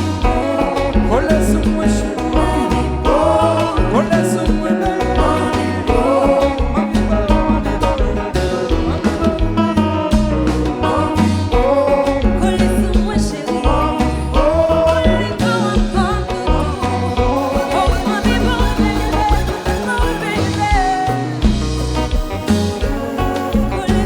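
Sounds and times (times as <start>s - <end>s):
drums: 0.0s - 24.0s
live band playing: 0.0s - 24.0s
pulsing bass line: 0.0s - 24.0s.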